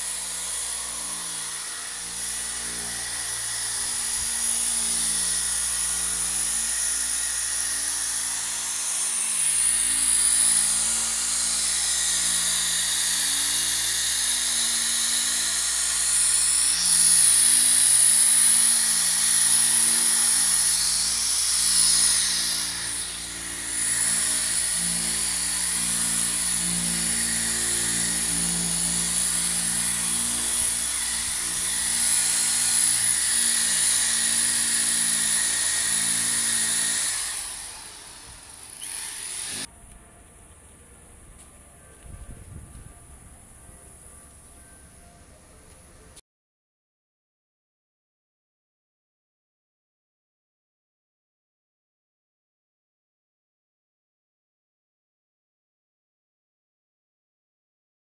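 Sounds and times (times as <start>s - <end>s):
electric polisher whining: 0.0s - 40.1s.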